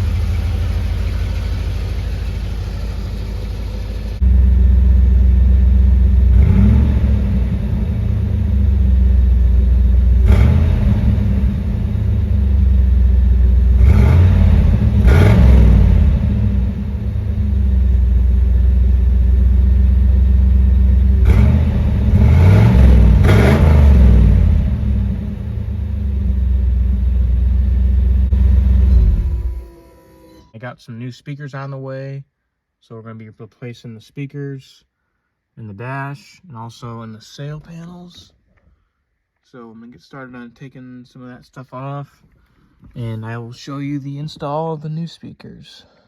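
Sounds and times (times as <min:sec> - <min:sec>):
car engine idling and revving: 0:00.0 - 0:30.4.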